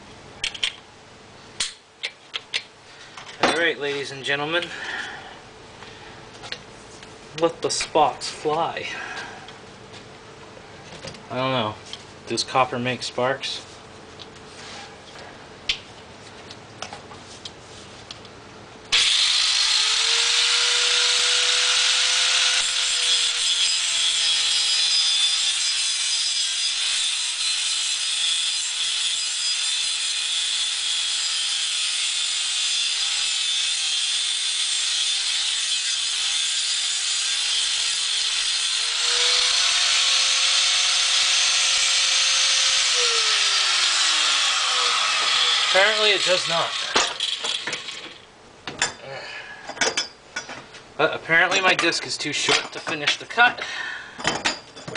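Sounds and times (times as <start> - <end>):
angle grinder cutting metal pipe: 18.9 - 48.2.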